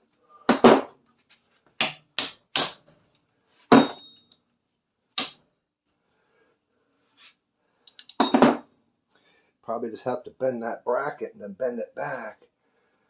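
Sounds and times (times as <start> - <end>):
hammer striking steel punch: 1.8 - 2.9, 5.2 - 5.4.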